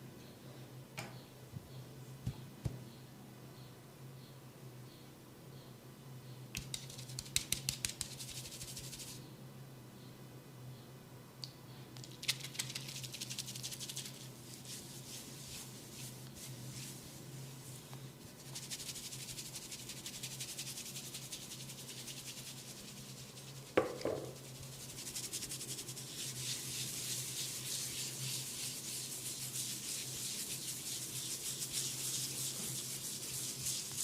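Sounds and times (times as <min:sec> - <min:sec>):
hands scratching scalp and hair: 0:06.6 - 0:09.2, 0:12.0 - 0:17.8, 0:18.4 - 0:34.0.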